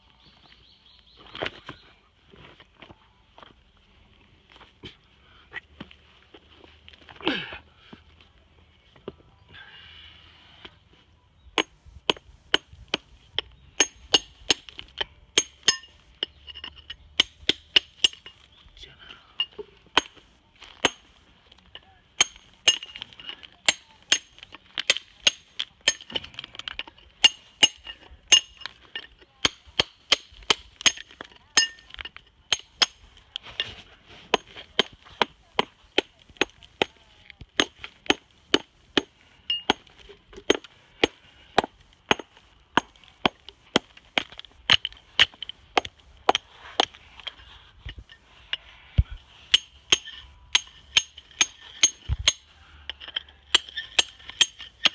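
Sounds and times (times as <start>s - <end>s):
hammer clinking on stone: 11.6s - 18.4s, 21.7s - 33.0s, 37.6s - 47.0s, 49.5s - 54.9s.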